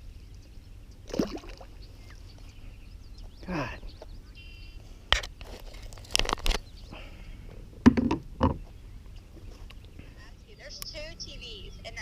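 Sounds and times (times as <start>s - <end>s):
sharp knocks and clicks: 7.8s - 8.7s.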